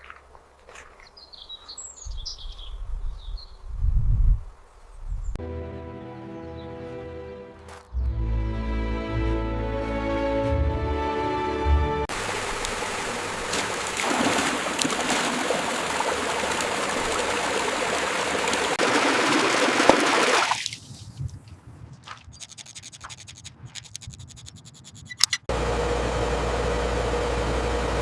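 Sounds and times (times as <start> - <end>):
water running and splashing: 12.1 - 21.1.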